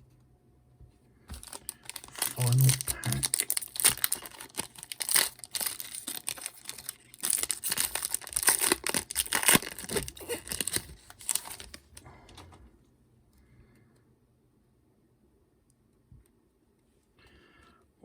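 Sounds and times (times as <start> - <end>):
foil wrapper tearing and crinkling: 1.3 - 12.0.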